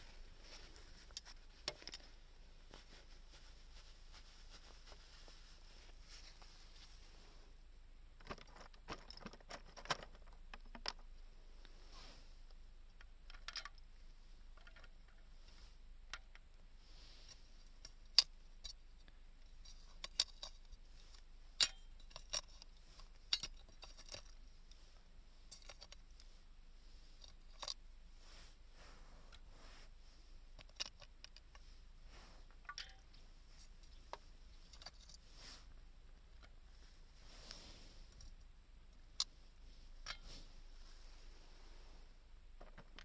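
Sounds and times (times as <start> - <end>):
small tools clicking and tapping: 17.8 - 24.4, 32.6 - 33.1.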